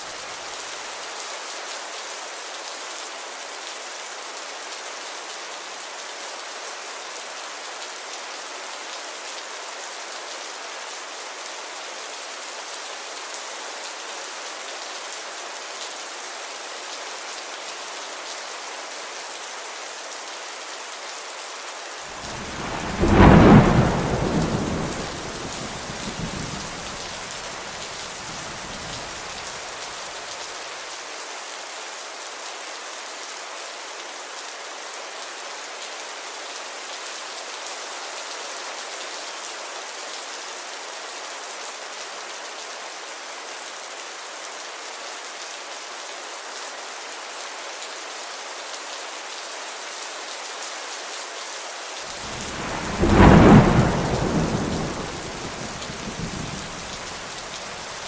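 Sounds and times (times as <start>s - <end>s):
steady rainfall hissing: 0.0s - 58.0s
thunder rumbling: 22.1s - 29.5s, 52.2s - 58.0s.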